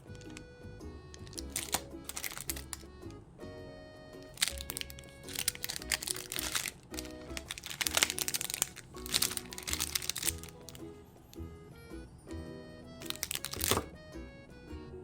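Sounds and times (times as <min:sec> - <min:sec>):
background music: 0:00.0 - 0:15.0
packaging crinkling and rustling: 0:01.2 - 0:02.9, 0:04.3 - 0:10.8, 0:13.0 - 0:13.9.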